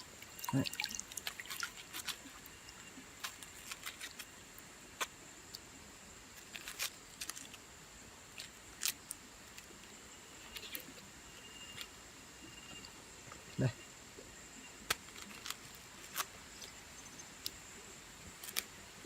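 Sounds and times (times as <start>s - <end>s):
hands handling plant material: 0.6s - 4.4s
faint high-pitched tone: 10.0s - 14.9s.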